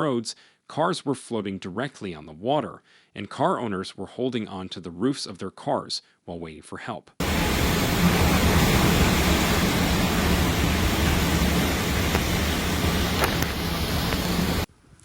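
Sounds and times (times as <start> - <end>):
heavy rain: 7.2 - 14.7
strong wind: 7.2 - 14.7.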